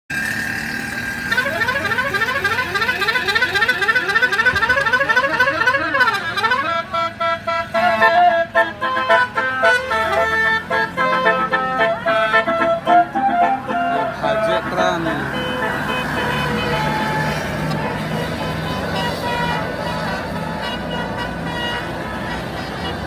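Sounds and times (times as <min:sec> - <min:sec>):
multi-tone bus horn playing: 0:00.1 - 0:23.0.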